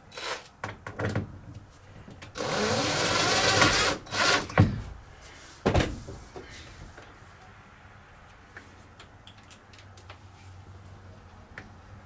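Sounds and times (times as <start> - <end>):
handheld power drill running: 2.4 - 4.5.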